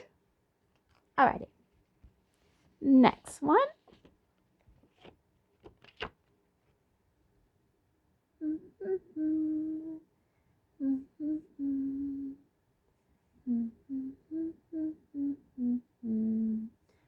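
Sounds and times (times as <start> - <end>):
woman humming a tune: 8.4 - 10.1, 10.8 - 12.5, 13.4 - 16.8.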